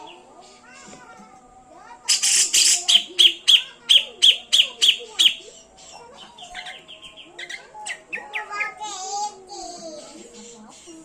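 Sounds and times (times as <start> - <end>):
bird calling sharp notes: 2.1 - 8.8.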